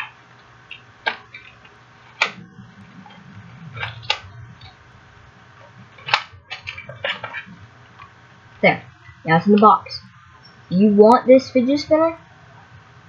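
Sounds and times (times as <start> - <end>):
low rustling: 0.5 - 9.3.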